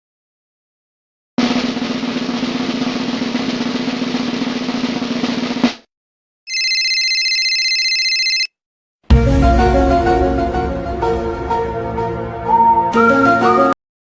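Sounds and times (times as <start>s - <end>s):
snare drum roll: 1.4s - 5.9s
high electronic ringing tone: 6.5s - 8.6s.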